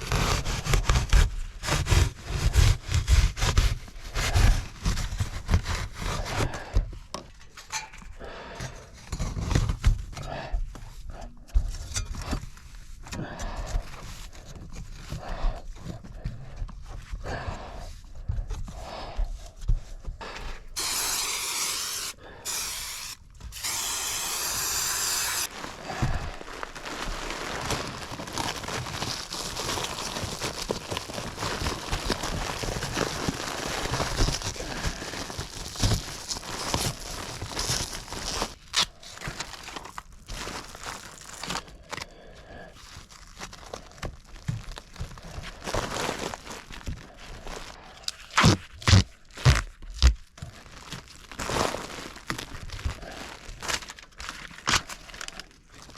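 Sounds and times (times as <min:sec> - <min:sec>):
duct materials crinkling and tearing: 0:00.0 - 0:07.6, 0:20.4 - 0:55.9
dense hiss: 0:20.8 - 0:25.5.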